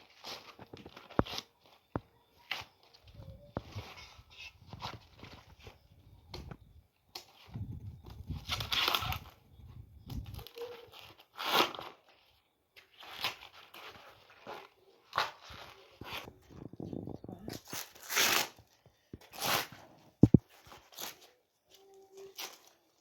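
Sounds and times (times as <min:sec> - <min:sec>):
food tearing and rustling: 0:08.1 - 0:09.4, 0:10.1 - 0:16.7, 0:17.5 - 0:23.0.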